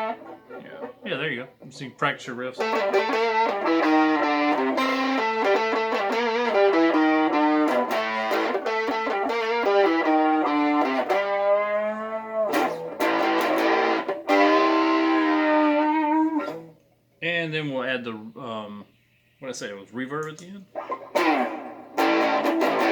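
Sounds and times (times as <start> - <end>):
electric guitar riff: 0.0 - 16.8, 20.7 - 22.9.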